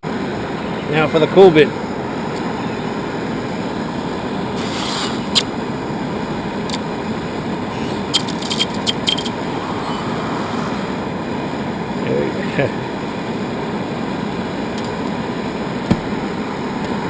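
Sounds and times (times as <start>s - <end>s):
furnace roaring: 0.0s - 17.0s
metallic clicks and scrapes: 8.1s - 9.4s.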